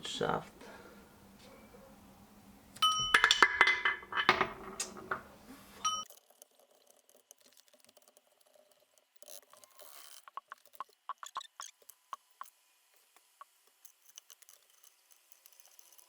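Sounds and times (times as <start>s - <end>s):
struck metal ringing: 2.8s - 4.8s
metal tools clinking: 2.8s - 6.0s
faint small ticks: 6.0s - 16.0s.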